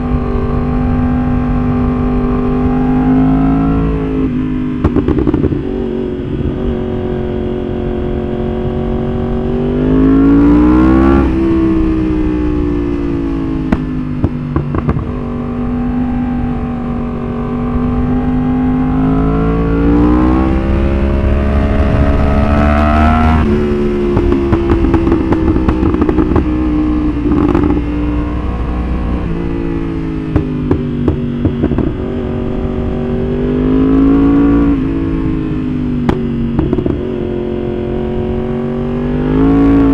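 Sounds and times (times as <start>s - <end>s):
motorcycle engine revving: 0.0s - 39.9s
exhaust pops and crackles: 4.8s - 5.8s, 12.5s - 15.6s, 20.1s - 32.6s, 35.4s - 37.4s.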